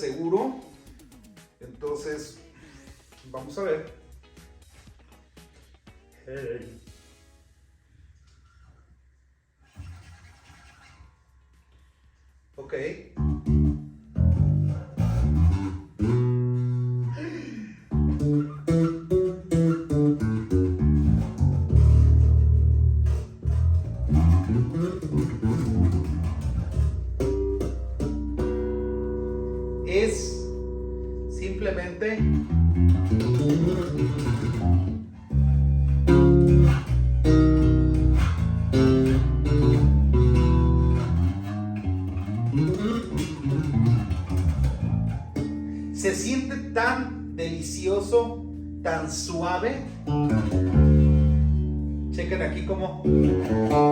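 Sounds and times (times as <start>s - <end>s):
electric bass notes: 13.0s - 53.9s.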